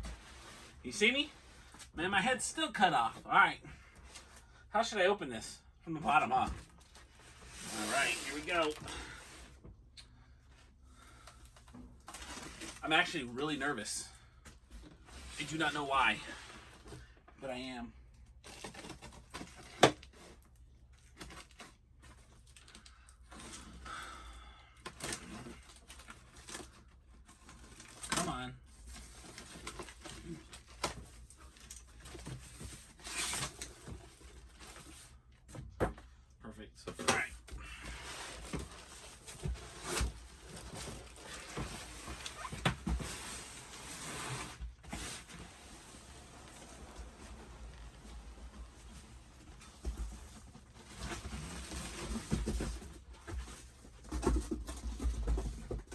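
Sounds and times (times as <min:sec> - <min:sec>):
cardboard rustling: 0:36.9 - 0:55.9
cardboard box knocking and rustling: 0:49.6 - 0:55.9.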